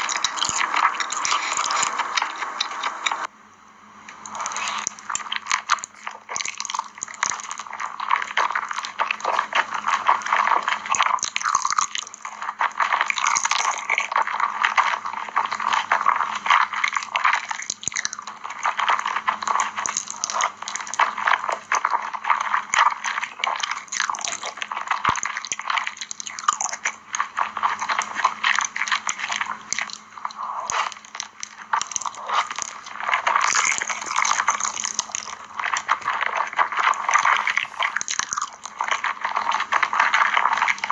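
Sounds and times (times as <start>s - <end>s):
person chewing noodles: 37.0s - 38.4s.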